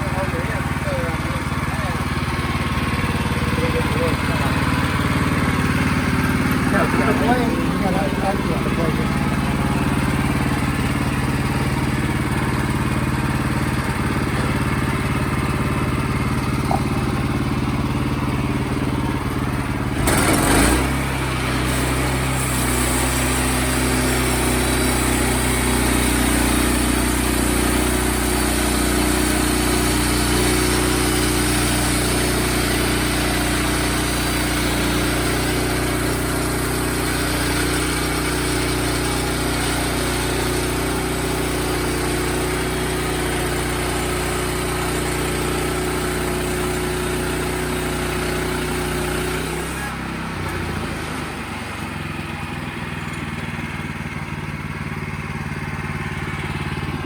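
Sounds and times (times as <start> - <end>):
sawmill engine running: 0.0 - 57.0.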